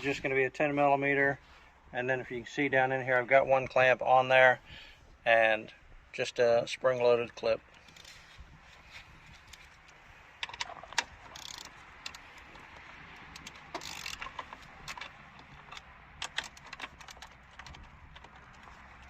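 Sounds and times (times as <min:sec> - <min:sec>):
hand tools clicking and clattering: 0:09.3 - 0:19.0.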